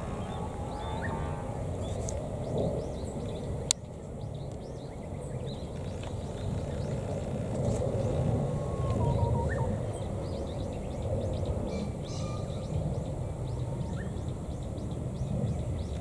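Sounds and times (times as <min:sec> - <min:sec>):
low background rumble: 0:00.0 - 0:03.4
small birds chirping: 0:04.2 - 0:16.0.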